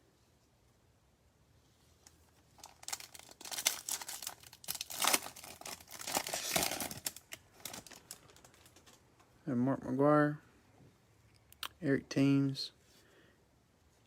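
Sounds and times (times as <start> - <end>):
card wrapper crinkling: 2.0 - 9.0.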